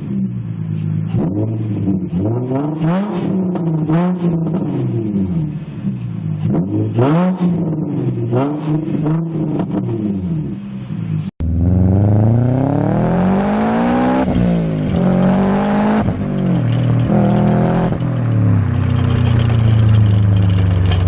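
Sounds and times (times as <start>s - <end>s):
car engine accelerating hard: 11.4s - 21.0s.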